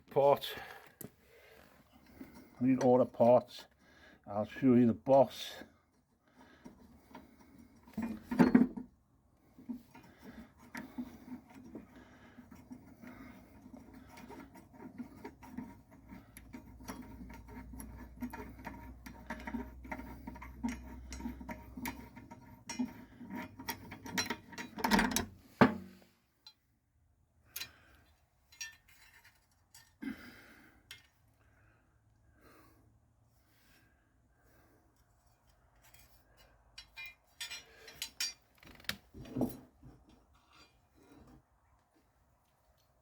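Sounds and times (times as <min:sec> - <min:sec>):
metal clunk: 0:24.0 - 0:26.0
metal clinks and taps: 0:28.5 - 0:30.0, 0:35.8 - 0:38.4.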